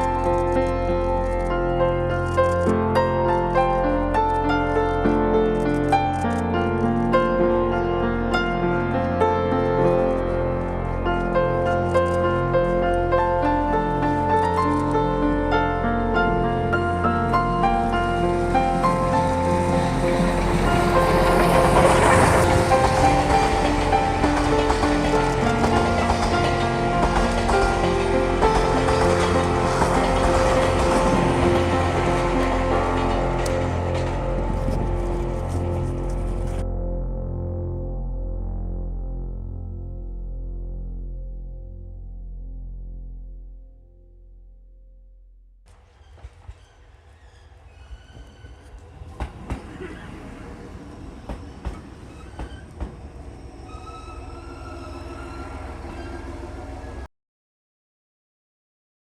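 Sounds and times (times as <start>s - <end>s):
train running: 0.0s - 36.6s, 45.7s - 57.1s
background music with held notes: 0.0s - 43.4s
high-pitched squeal: 49.8s - 57.1s.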